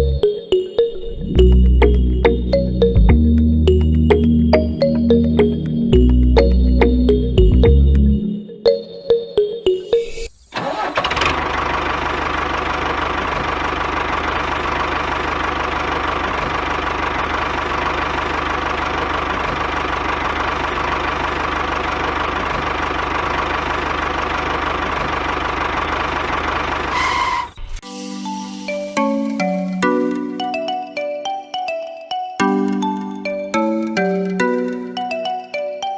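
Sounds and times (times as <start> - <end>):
small engine knocking steadily: 11.1 - 26.9.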